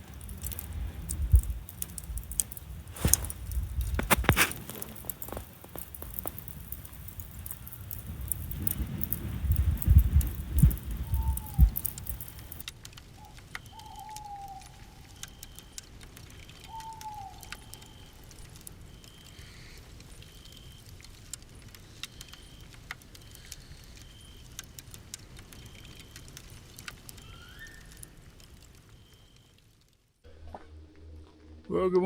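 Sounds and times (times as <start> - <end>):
campfire crackling: 0.0 - 31.7.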